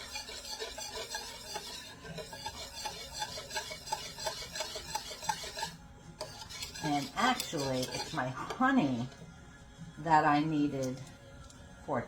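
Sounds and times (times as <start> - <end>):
utensil stirring liquid in bowl: 0.0 - 9.3.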